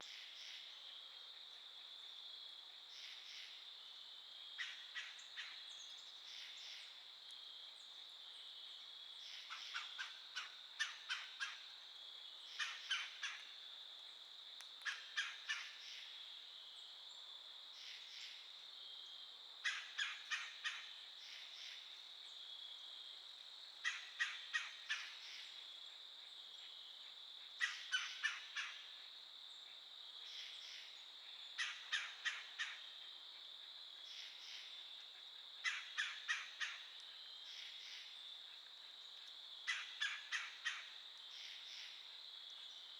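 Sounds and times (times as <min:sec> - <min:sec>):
crickets droning: 0:00.0 - 0:42.9
woodpecker calling: 0:12.6 - 0:13.4, 0:14.8 - 0:15.9, 0:19.6 - 0:20.8, 0:27.6 - 0:28.8, 0:35.6 - 0:36.8, 0:39.7 - 0:40.9.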